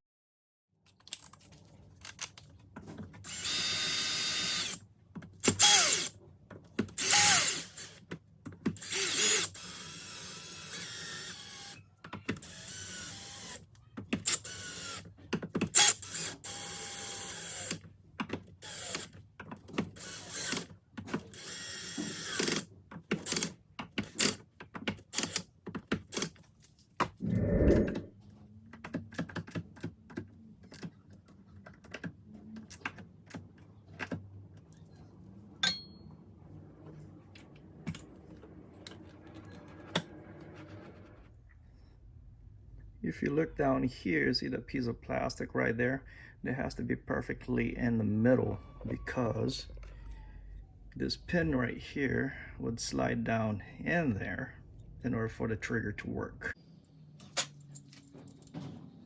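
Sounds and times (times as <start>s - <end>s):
small power tool whirring: 3.3s - 4.8s, 5.4s - 6.1s, 7.0s - 8.0s, 8.8s - 15.1s, 15.7s - 17.8s, 18.6s - 19.2s, 20.0s - 20.7s, 21.3s - 23.5s.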